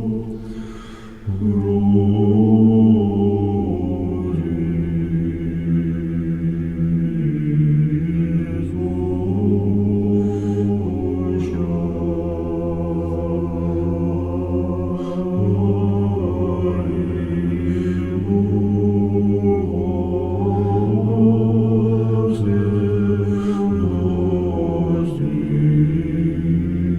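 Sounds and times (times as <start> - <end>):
low male voices chanting: 0.0 - 26.9.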